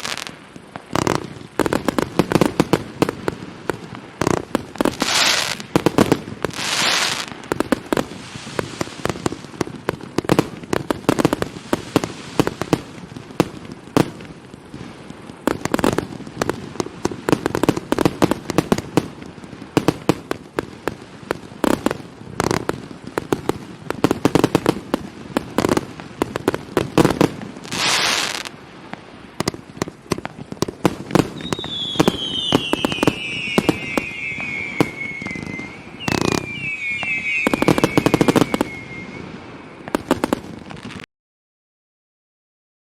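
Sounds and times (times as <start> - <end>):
fireworks crackling: 0.0 - 41.1
fireworks launch thumps and bursts: 29.4 - 39.0
hissing rushes: 31.4 - 39.8
falling whistles: 31.4 - 39.9.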